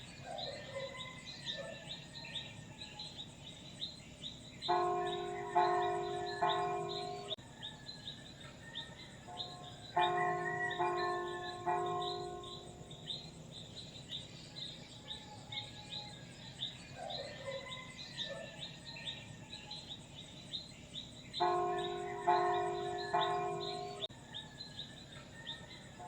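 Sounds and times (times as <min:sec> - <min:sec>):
birds chirping: 0:00.0 - 0:07.8, 0:09.3 - 0:24.1
church bell ringing: 0:04.6 - 0:07.4, 0:09.4 - 0:13.2, 0:21.4 - 0:24.1.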